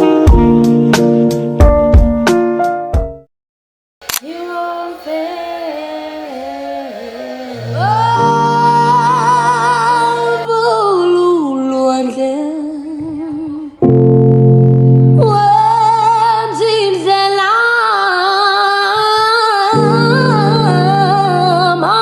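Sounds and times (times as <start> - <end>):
woman singing: 4.2 - 13.8, 15.2 - 22.0.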